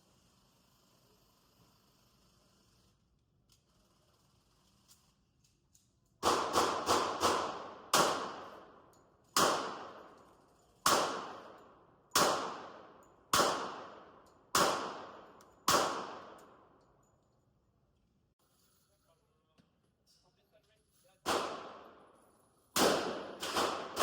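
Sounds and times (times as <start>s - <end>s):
gunshots in indoor range: 6.2s - 16.8s, 21.2s - 24.0s.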